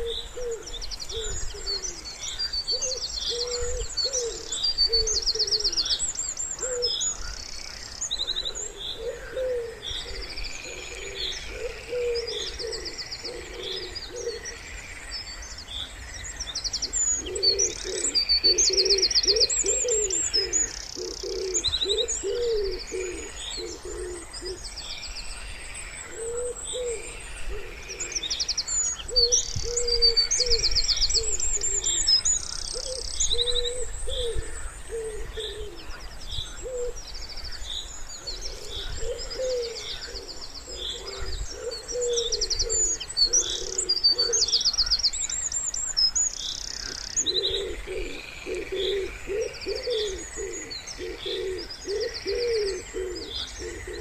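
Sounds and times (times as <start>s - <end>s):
wood pigeon cooing: 0.0s - 2.1s, 2.7s - 5.9s, 6.6s - 7.0s, 8.2s - 14.6s, 16.8s - 24.6s, 26.1s - 28.2s, 29.1s - 32.0s, 32.6s - 35.9s, 36.6s - 37.0s, 38.2s - 44.6s, 46.8s - 54.0s
songbirds trilling and chirping: 0.0s - 54.0s.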